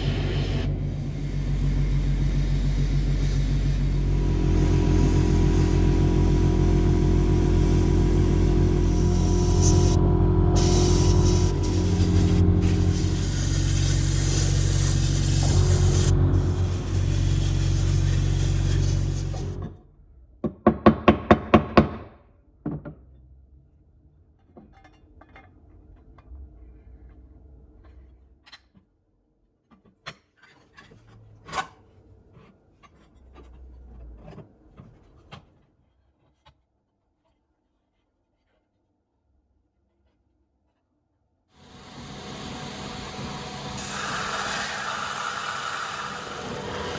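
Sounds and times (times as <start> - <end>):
motor-driven tool running: 0.0 - 19.6, 41.7 - 46.9.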